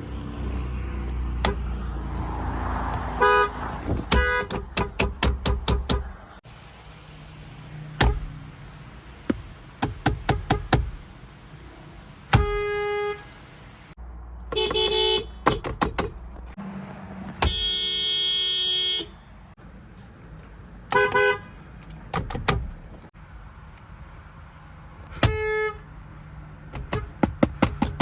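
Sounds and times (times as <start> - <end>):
car horn blasts: 3.2 - 4.6, 12.3 - 13.4, 14.5 - 15.7, 17.4 - 19.2, 20.9 - 21.5, 25.2 - 25.8.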